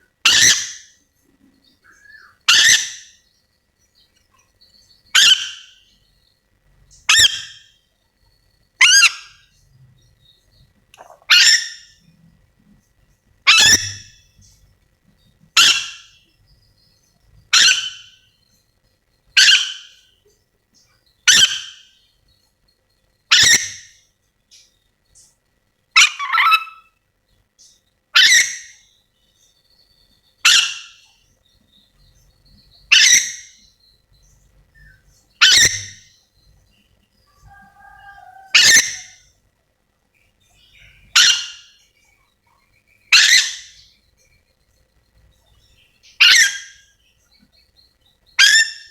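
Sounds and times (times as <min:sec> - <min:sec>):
parrot screeching: 0:00.2 - 0:00.8, 0:02.5 - 0:03.0, 0:05.2 - 0:05.7, 0:11.0 - 0:11.8, 0:13.5 - 0:14.0, 0:15.6 - 0:16.1, 0:17.6 - 0:18.1, 0:19.4 - 0:19.9, 0:21.3 - 0:21.8, 0:23.3 - 0:23.8, 0:26.0 - 0:26.9, 0:28.2 - 0:28.7, 0:30.5 - 0:31.0, 0:32.9 - 0:33.5, 0:35.4 - 0:36.0, 0:37.3 - 0:39.2, 0:41.2 - 0:41.6, 0:43.1 - 0:43.7, 0:46.2 - 0:46.8.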